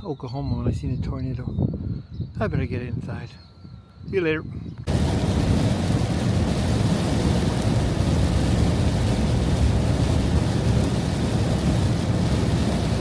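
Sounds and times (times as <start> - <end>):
deep thunder rumbling: 4.9 - 13.0.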